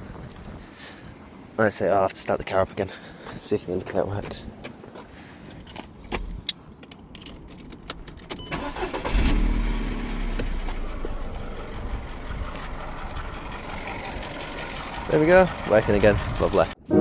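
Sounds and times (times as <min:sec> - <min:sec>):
car engine starting and idling: 0:06.2 - 0:17.0.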